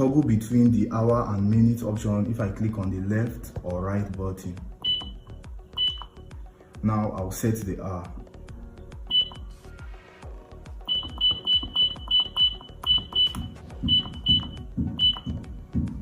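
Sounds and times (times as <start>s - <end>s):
background music with steady beat: 0.0s - 16.0s
alarm clock short high beeps: 4.8s - 6.3s, 9.1s - 9.5s, 10.9s - 15.5s.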